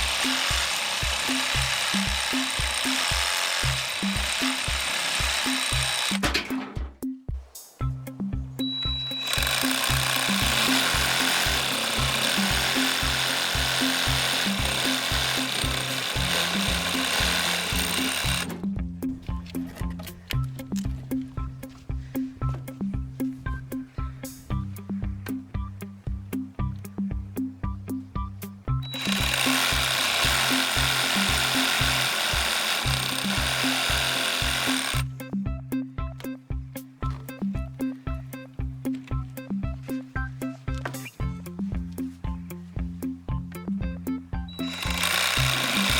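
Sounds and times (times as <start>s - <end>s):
reciprocating saw cutting wood: 0.0s - 6.6s, 9.0s - 18.7s, 28.8s - 35.1s, 44.5s - 45.9s
upbeat background music: 0.0s - 45.9s.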